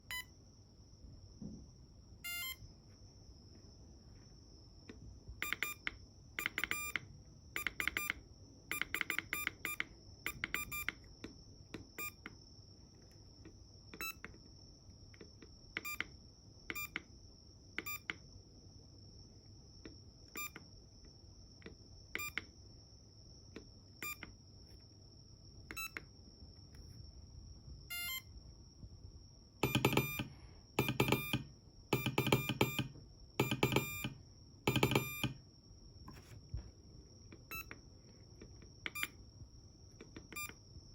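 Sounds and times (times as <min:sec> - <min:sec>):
morse code beeps: 0:02.2 - 0:02.6, 0:05.4 - 0:11.0, 0:12.0 - 0:12.2, 0:15.8 - 0:16.1, 0:16.7 - 0:17.0, 0:24.0 - 0:24.3, 0:25.7 - 0:26.0, 0:27.9 - 0:28.3, 0:29.6 - 0:35.4, 0:37.5 - 0:37.8, 0:38.9 - 0:39.2, 0:40.2 - 0:40.6.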